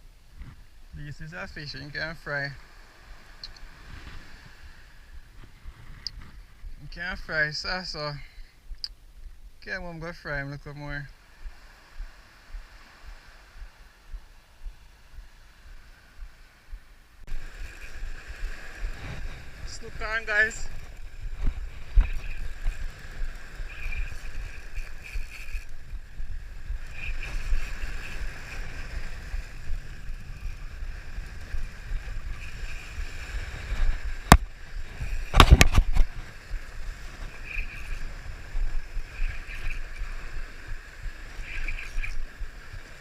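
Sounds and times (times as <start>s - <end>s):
wind: 0.0s - 43.0s
water: 9.7s - 43.0s.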